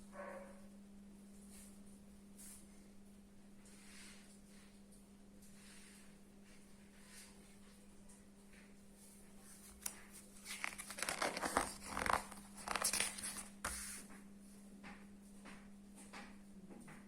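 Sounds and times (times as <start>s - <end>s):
material rustling and crinkling: 9.0s - 14.1s.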